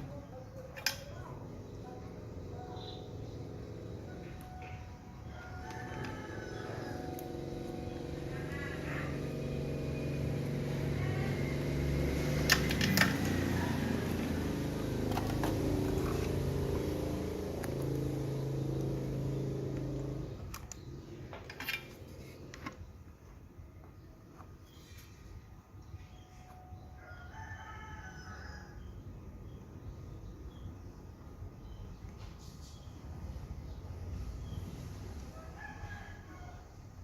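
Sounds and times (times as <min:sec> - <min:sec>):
vehicle engine passing by: 0:05.3 - 0:21.3.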